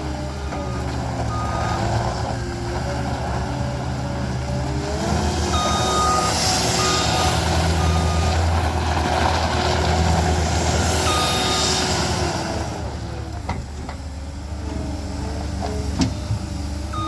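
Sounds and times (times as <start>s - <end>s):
diesel engine running: 0.0s - 17.0s
backup alarm beeping: 5.6s - 8.4s, 11.0s - 11.7s.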